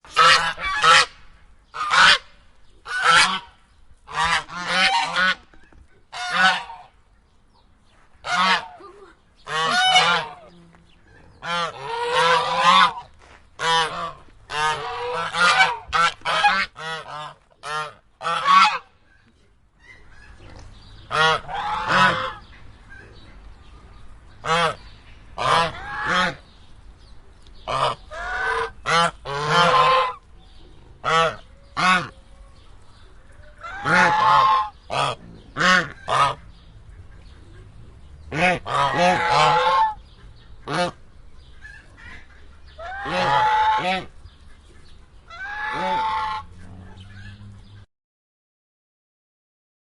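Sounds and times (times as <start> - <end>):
geese honking: 0.1 - 5.5, 6.1 - 6.9, 8.2 - 8.8, 9.4 - 10.5, 11.3 - 18.9, 21.0 - 23.1, 24.4 - 26.4, 27.6 - 30.3, 31.0 - 32.6, 33.4 - 37.6, 38.3 - 47.8.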